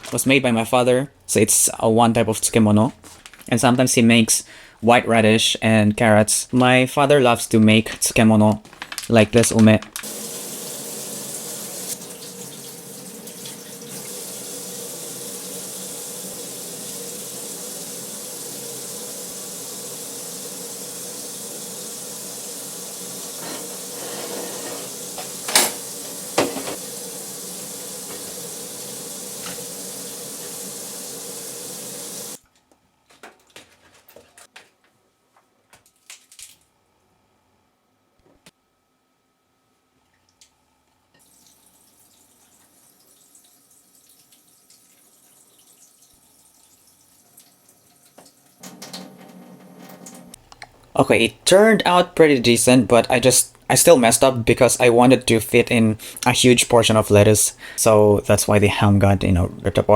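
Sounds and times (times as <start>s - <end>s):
tap running into a sink: 24.9s - 30.9s.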